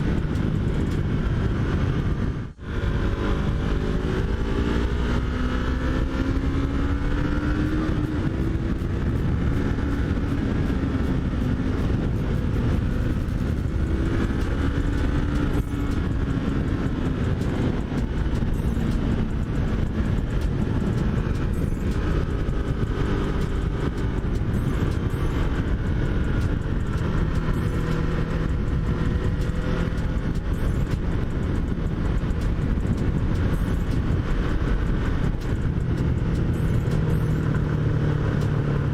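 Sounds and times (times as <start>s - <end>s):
motorcycle engine running: 0.0s - 38.9s
wind noise: 0.0s - 38.9s.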